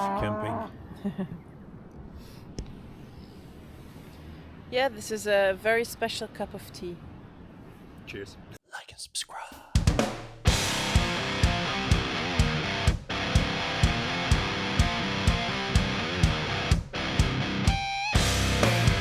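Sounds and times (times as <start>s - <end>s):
guitar-led music with drum beat: 9.8s - 19.0s.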